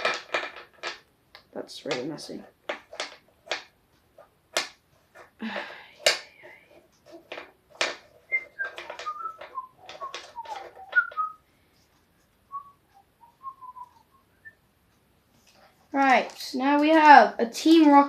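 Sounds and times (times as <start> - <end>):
person whistling: 8.3 - 11.4, 12.5 - 14.6.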